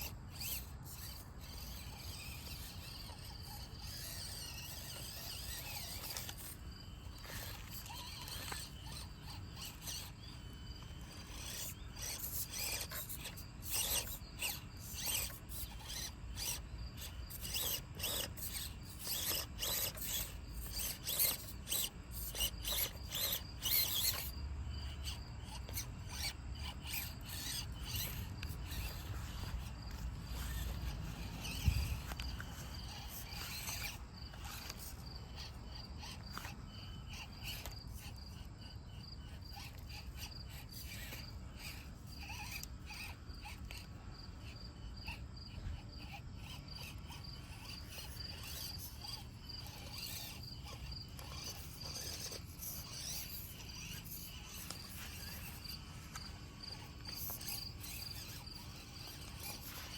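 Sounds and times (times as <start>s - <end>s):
electric motor whirring: 0.0s - 59.9s.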